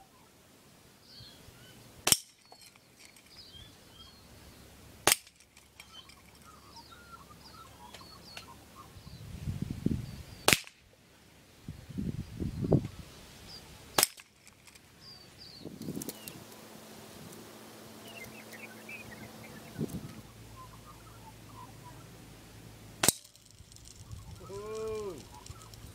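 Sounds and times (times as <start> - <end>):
birds chirping: 1.0 - 25.9
air rifle shots: 2.0 - 2.6, 5.0 - 6.1, 10.4 - 10.8, 13.9 - 14.4, 23.0 - 24.0.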